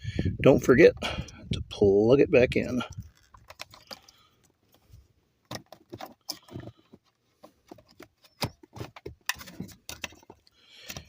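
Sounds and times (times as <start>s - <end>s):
plastic connector clicking and rattling: 2.9s - 4.6s.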